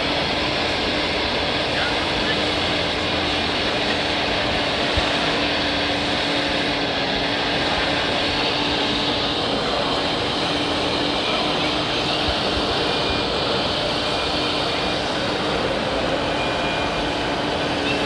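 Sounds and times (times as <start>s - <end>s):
model trucks mechanical drone: 0.0s - 18.0s.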